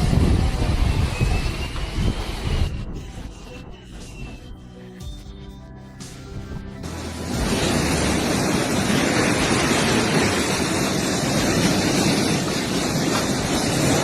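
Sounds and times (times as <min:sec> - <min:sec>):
loud steady rushing noise: 0:00.0 - 0:05.2, 0:06.0 - 0:14.0.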